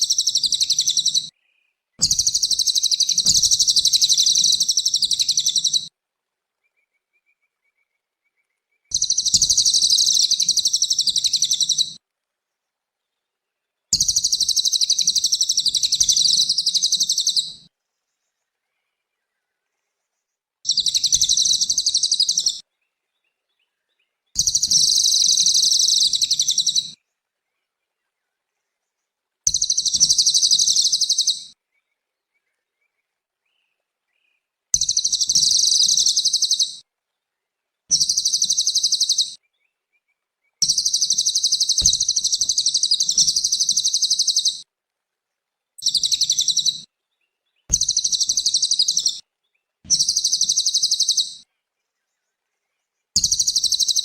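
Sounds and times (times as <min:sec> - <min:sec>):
songbird chattering song: 0:00.0 - 0:05.9, 0:06.6 - 0:12.0, 0:13.0 - 0:44.7, 0:45.8 - 0:54.0.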